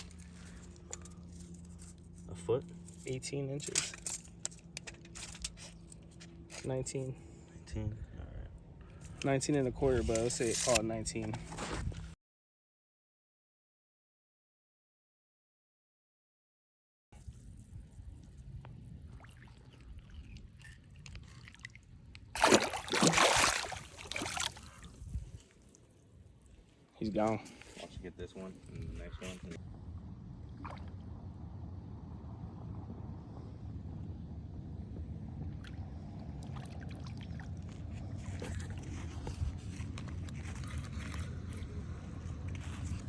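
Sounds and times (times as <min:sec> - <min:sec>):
wind rumble on microphone: 0:06.9 - 0:12.2, 0:17.2 - 0:22.4, 0:23.7 - 0:25.7, 0:27.4 - 0:43.0
microphone handling clicks and rustles: 0:09.9 - 0:12.2
fish splashing in water: 0:22.4 - 0:25.0.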